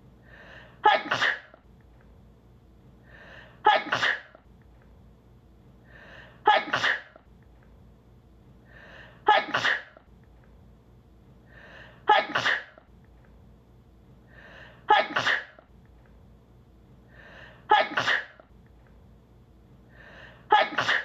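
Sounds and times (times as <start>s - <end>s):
woman sneezing: 0.8s - 1.6s, 3.6s - 4.4s, 6.4s - 7.2s, 9.2s - 10.0s, 12.0s - 12.8s, 14.8s - 15.6s, 17.7s - 18.4s, 20.5s - 21.0s.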